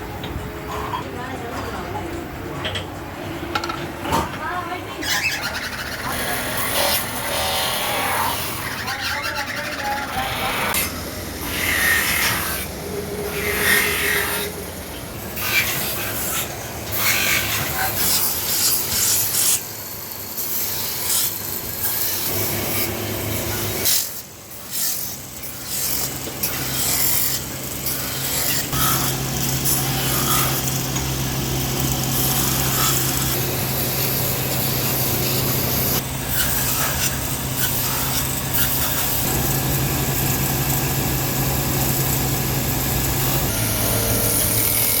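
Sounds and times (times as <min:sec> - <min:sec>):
tool scraping and rasping metal: 0:05.0 - 0:45.0
machine motor hum: 0:25.1 - 0:45.0.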